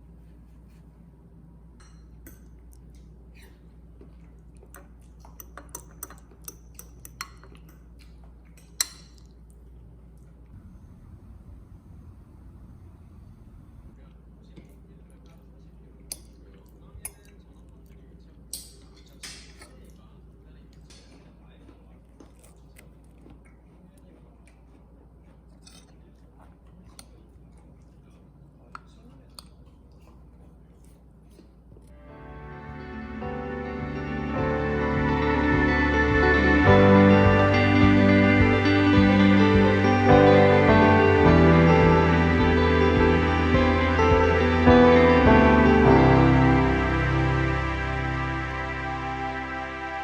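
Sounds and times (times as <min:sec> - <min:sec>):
steady low hum: 0:00.0 - 0:19.0
kitchenware clicking and clinking: 0:01.8 - 0:02.7, 0:04.7 - 0:09.4, 0:25.6 - 0:26.0
low hum: 0:10.1 - 0:14.2, 0:31.9 - 0:50.0.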